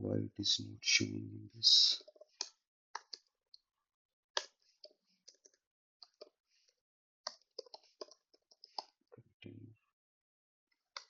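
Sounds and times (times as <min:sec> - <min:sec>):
computer keyboard typing: 0:07.3 - 0:08.9.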